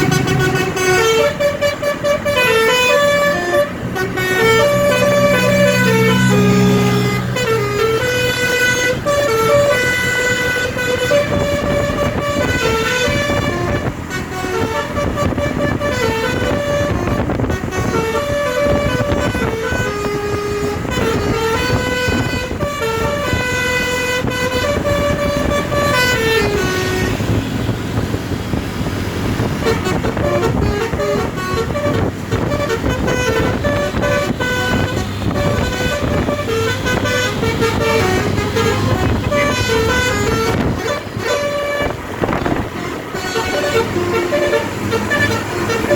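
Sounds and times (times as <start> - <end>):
bus engine running: 0.0 - 45.9
musical bus horn tune: 0.0 - 45.9.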